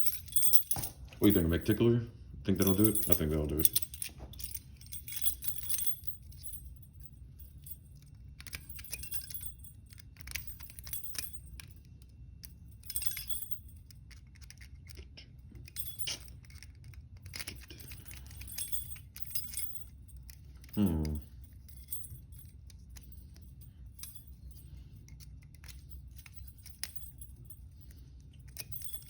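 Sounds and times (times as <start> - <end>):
lock picks clicking in a padlock: 7.6 - 29.0.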